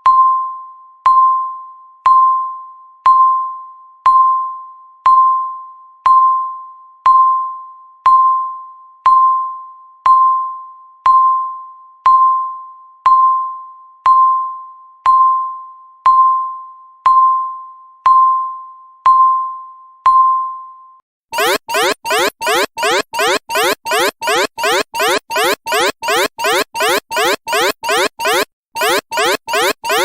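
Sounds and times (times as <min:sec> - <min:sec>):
electronic timer ding: 0:21.4 - 0:30.0.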